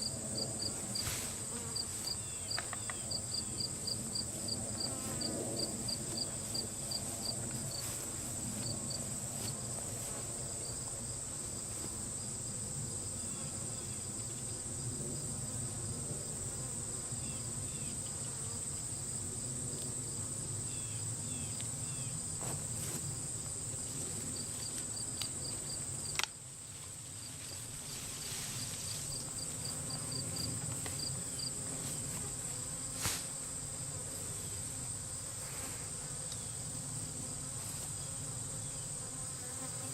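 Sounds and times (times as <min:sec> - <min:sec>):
bee swarm humming: 0:00.1 - 0:02.5
high-pitched insect trill: 0:01.0 - 0:05.2, 0:20.7 - 0:22.3.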